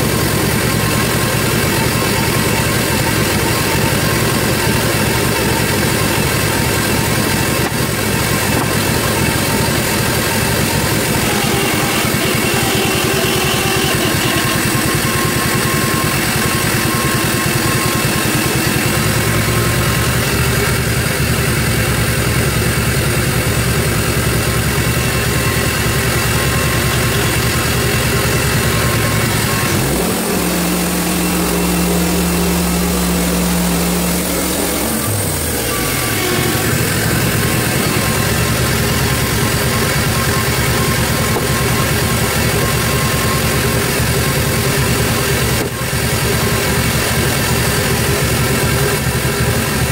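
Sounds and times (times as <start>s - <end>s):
bandsaw mill running: 0.0s - 49.9s.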